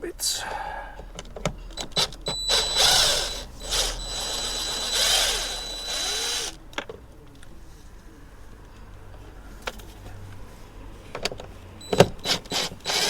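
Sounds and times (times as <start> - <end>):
power drill backing out screws: 1.2 - 6.6, 11.8 - 13.0.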